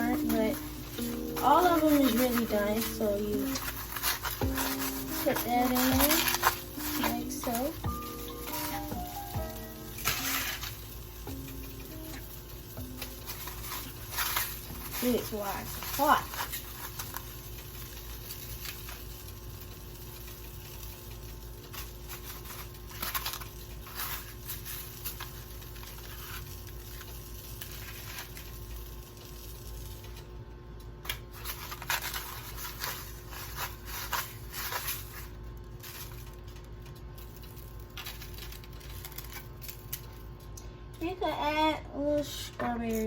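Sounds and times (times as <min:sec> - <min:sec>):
utensils tapping and rustling: 0:00.0 - 0:30.3
steady low hum: 0:00.0 - 0:43.0.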